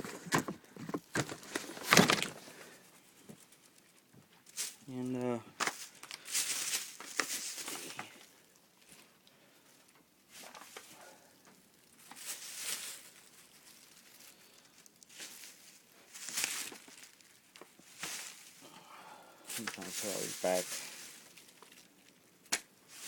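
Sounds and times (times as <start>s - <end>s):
plastic wrap crinkling: 0.0s - 18.7s, 19.5s - 23.0s.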